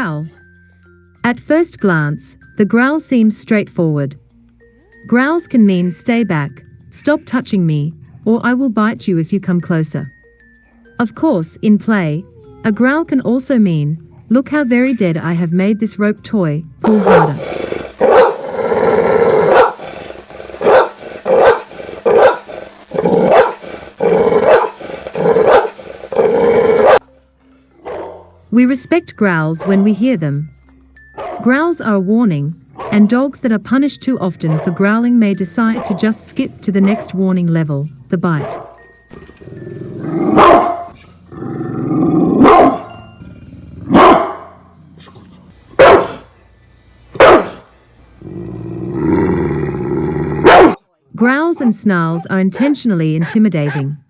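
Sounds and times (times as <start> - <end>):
dog growling and barking: 6.7 - 8.5, 16.8 - 27.0, 27.8 - 28.4, 32.7 - 33.1, 34.5 - 34.8, 35.7 - 37.2, 38.4 - 46.3, 47.2 - 50.8, 52.2 - 54.0.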